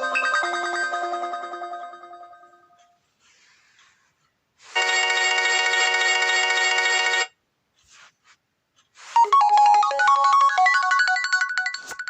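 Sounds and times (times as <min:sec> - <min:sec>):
many-toned ringtone chime: 0:00.0 - 0:03.0, 0:09.2 - 0:12.0
ringtone melody of bright notes: 0:00.0 - 0:03.0, 0:04.8 - 0:07.4, 0:09.0 - 0:12.0.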